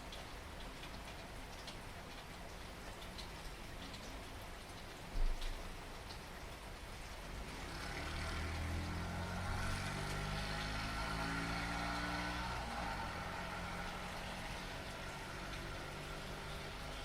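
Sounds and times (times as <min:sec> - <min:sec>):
steady rain: 0:00.0 - 0:17.0
vehicle engine passing: 0:07.4 - 0:17.0.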